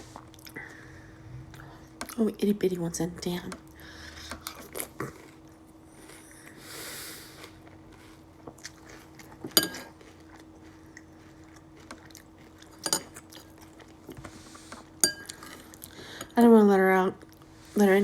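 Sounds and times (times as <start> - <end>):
chewing soggy cereal: 4.4 - 16.2.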